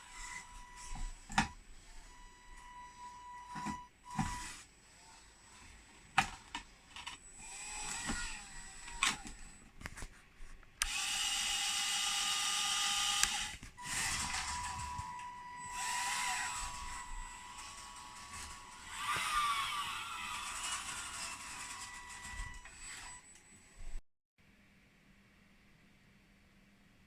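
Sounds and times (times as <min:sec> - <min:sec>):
small electric motors whirring: 0:00.0 - 0:09.7, 0:10.8 - 0:24.0
clicks: 0:13.2 - 0:15.4.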